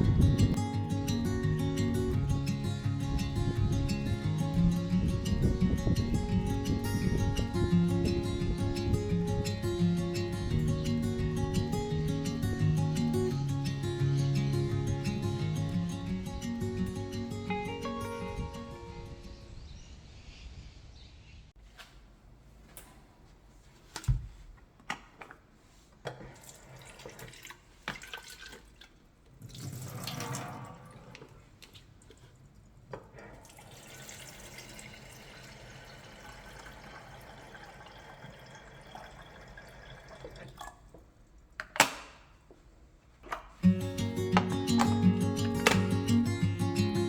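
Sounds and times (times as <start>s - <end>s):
water running from tap: 26.4s - 31.3s, 33.3s - 41.0s.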